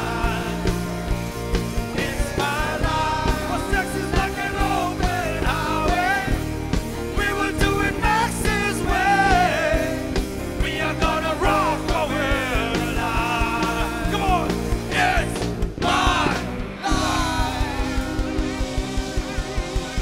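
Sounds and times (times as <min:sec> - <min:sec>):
live rock band playing: 0:00.0 - 0:20.0
steady drum beat: 0:00.0 - 0:20.0
person singing: 0:10.6 - 0:18.5.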